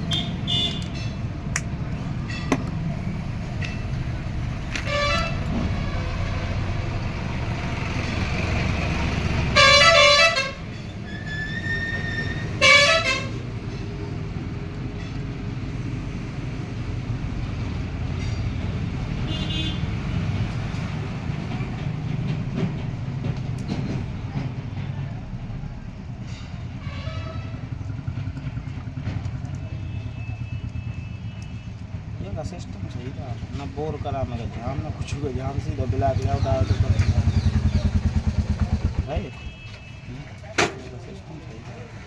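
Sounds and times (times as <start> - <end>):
vehicle horns honking: 0.0 - 1.2, 4.7 - 6.7, 9.5 - 13.5, 19.2 - 19.9, 26.8 - 27.6, 38.2 - 40.9
road traffic rumble: 0.0 - 42.0.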